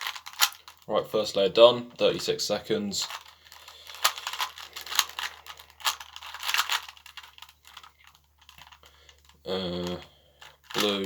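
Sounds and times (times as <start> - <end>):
puzzle cube clicking when turned: 3.0 - 11.0.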